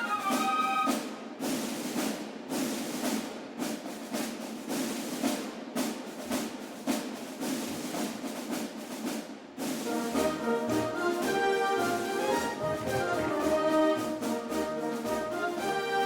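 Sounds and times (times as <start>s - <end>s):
snare drum march rolls: 0.0s - 16.0s
melody: 10.2s - 16.0s.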